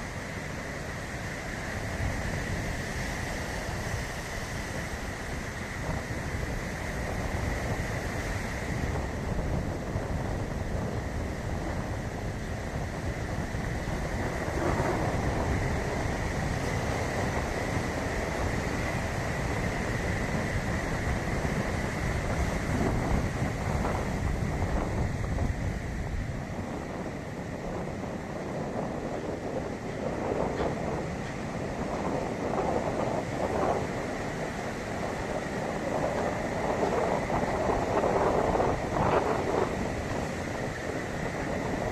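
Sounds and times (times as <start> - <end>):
surf washing onto a beach: 0.0 - 41.9
wind buffeting microphone: 0.0 - 41.9.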